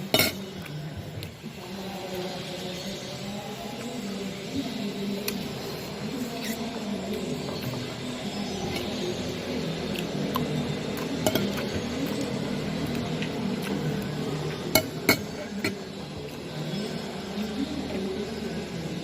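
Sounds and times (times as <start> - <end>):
cutlery and dishes clinking: 0.0 - 0.6, 11.2 - 11.9, 14.7 - 15.8
steady low background noise: 0.0 - 19.0.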